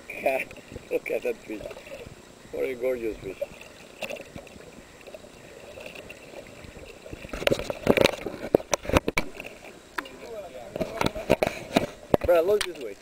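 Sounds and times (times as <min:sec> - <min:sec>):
water sloshing and trickling: 0:00.0 - 0:13.0
sharp knocks and splashes: 0:07.0 - 0:12.9.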